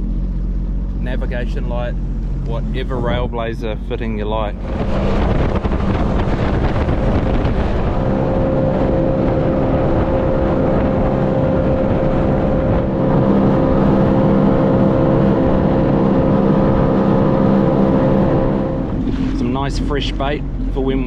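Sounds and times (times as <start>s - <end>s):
jet ski engine drone: 0.0s - 21.0s
wind and water rushing: 4.5s - 21.0s.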